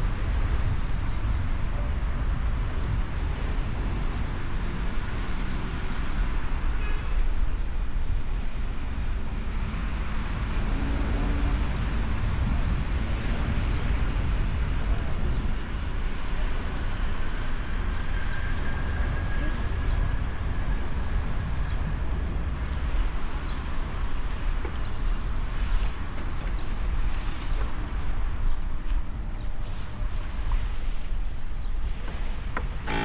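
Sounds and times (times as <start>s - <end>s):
wind rush over microphone: 0.0s - 33.0s
motorcycle engine running: 32.8s - 33.0s.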